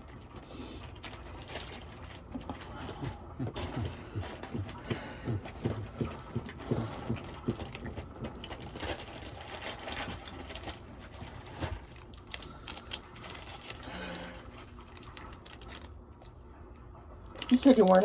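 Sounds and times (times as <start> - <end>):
snacks crunching while eaten: 0.0 - 16.4.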